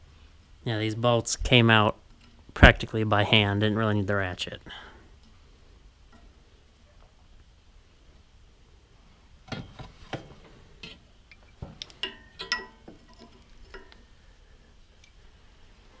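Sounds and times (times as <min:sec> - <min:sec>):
metal parts clinking: 0:11.3 - 0:14.0.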